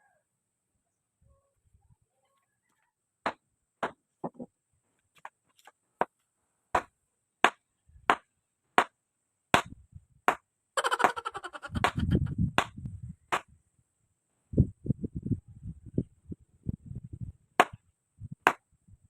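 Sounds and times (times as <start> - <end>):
sharp strikes on wood: 6.7 - 9.0, 9.6 - 10.4, 17.6 - 17.8.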